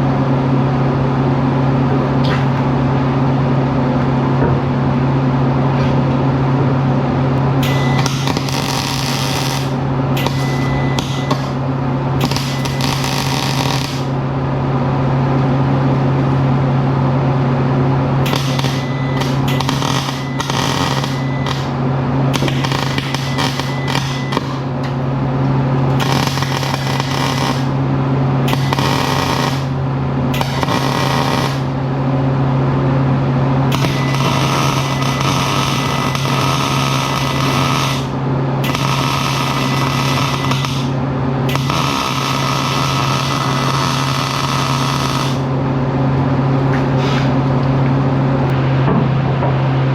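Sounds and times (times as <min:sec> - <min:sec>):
steady low hum: 0:00.0 - 0:49.9
arc welding crackling hiss: 0:07.6 - 0:14.2, 0:18.2 - 0:24.7, 0:25.9 - 0:27.8, 0:28.5 - 0:31.8, 0:33.7 - 0:45.5.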